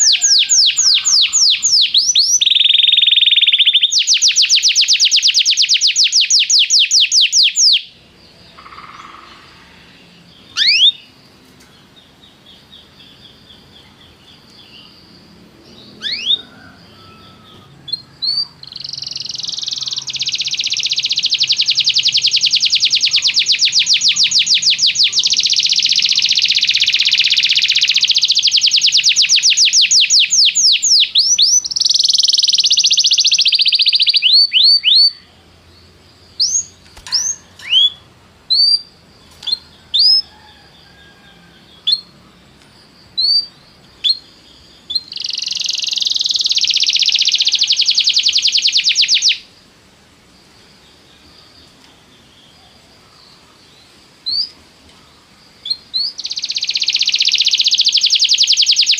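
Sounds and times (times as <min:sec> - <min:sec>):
canary trilling: 0:00.0 - 0:07.9, 0:08.6 - 0:09.7, 0:10.4 - 0:11.1, 0:16.0 - 0:35.3, 0:36.4 - 0:40.3, 0:43.2 - 0:49.4, 0:55.7 - 0:58.9
sharp bird chirps: 0:00.0 - 0:40.3, 0:43.0 - 0:49.5, 0:55.6 - 0:58.9.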